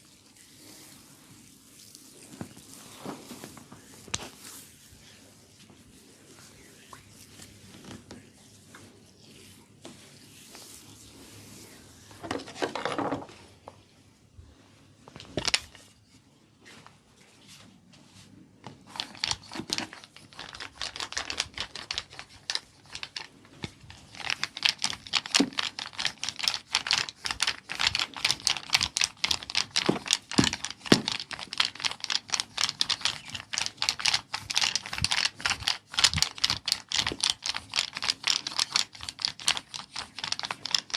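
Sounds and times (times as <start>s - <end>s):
soft rustles: 0.0s - 24.8s.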